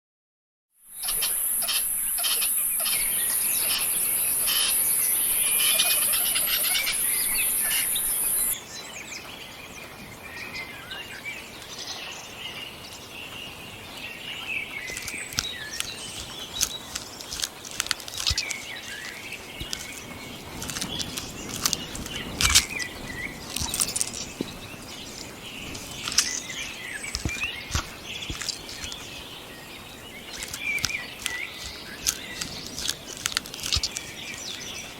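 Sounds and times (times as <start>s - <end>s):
high-pitched hiss: 0.8s - 8.6s
small birds chirping: 0.8s - 34.9s
sharp ticks and rustles: 1.0s - 8.6s, 14.9s - 34.9s.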